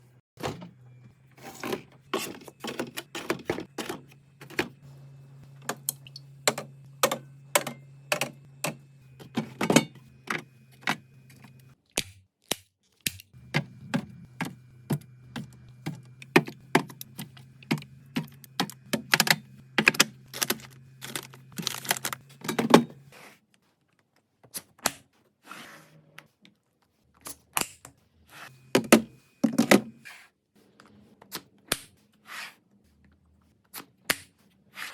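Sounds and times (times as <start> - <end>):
steady low hum: 0.0 - 11.8, 13.4 - 23.2.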